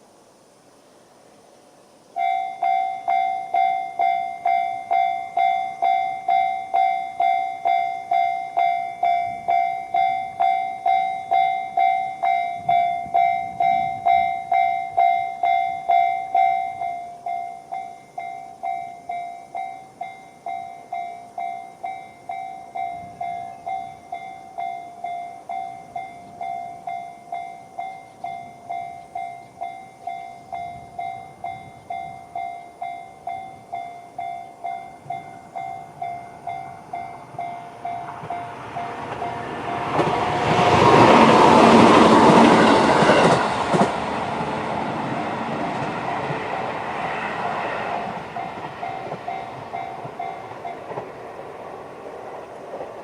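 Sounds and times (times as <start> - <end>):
level-crossing bell ringing: 2.2 - 40.1, 47.6 - 51.0.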